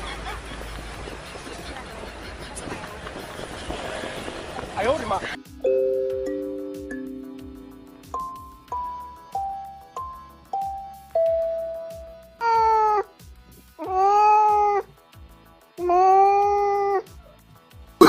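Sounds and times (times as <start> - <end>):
mallet-like music notes: 5.4 - 12.5.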